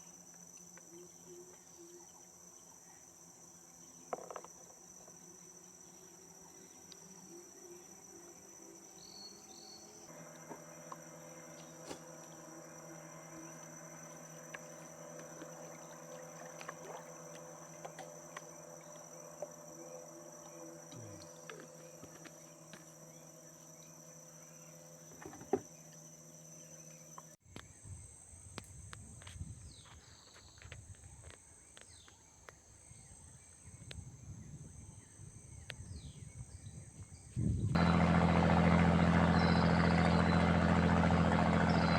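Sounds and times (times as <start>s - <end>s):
insects trilling: 0.0s - 41.9s
faint low hum: 34.2s - 41.9s
low rumble: 37.8s - 41.9s.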